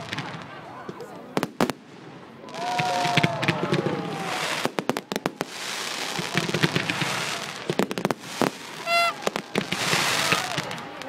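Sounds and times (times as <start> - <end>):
fireworks bangs: 0.0 - 11.0
fireworks crackling fizz: 0.0 - 11.0
falling firework whistles: 5.4 - 10.8.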